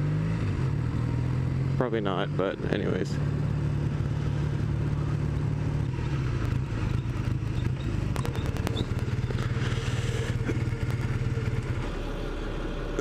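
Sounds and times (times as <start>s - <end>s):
motorcycle engine running at low revs: 0.0s - 13.0s
sharp clicks and rattles: 5.8s - 11.8s.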